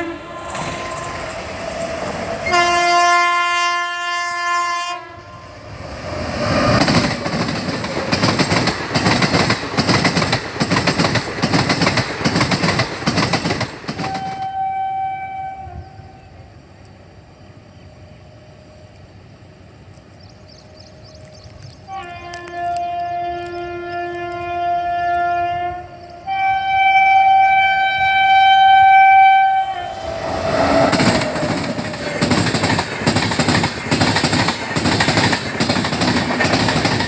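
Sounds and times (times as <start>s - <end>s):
train horn: 0.0s - 5.8s, 14.0s - 16.5s, 21.9s - 32.7s
steady train rumble: 0.0s - 37.0s
train wheels clattering over rail joints: 5.8s - 14.5s, 30.1s - 37.0s.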